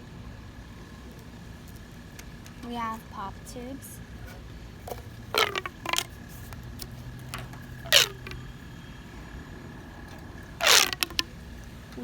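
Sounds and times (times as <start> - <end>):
plastic pop tube popping: 4.9 - 6.2, 7.3 - 8.4, 10.6 - 11.3.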